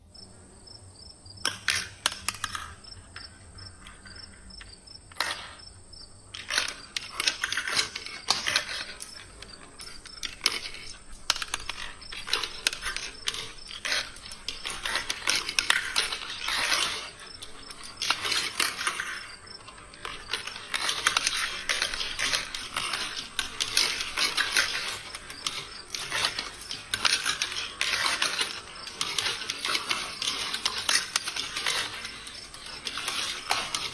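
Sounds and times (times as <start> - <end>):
marbles rattling down plastic track: 6.3 - 33.9.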